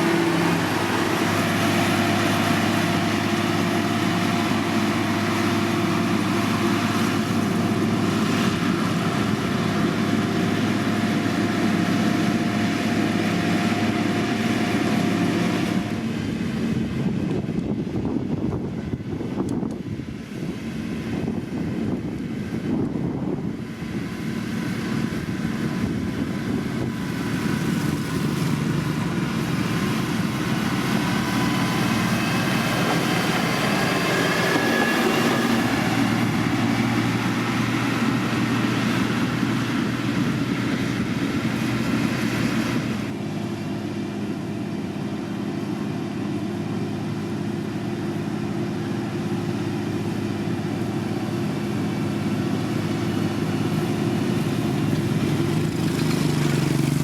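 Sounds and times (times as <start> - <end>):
heavy machinery diesel engines: 0.0 - 57.0.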